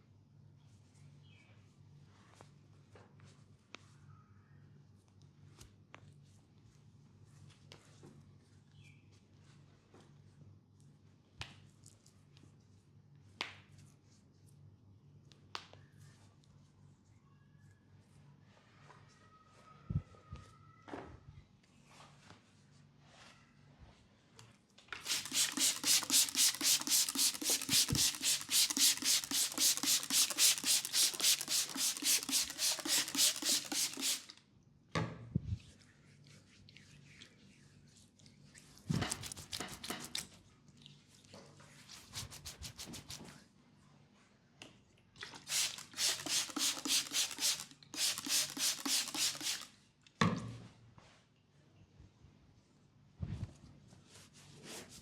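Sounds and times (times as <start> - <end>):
hands rubbing in massage: 25.0 - 34.4, 38.9 - 40.4, 41.7 - 43.4, 45.4 - 49.7.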